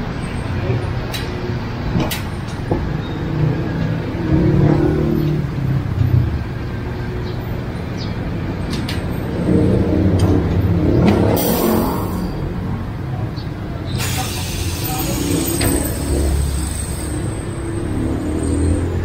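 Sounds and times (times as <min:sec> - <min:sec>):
vehicle engines passing: 0:00.0 - 0:19.0
short hiss: 0:14.0 - 0:15.4.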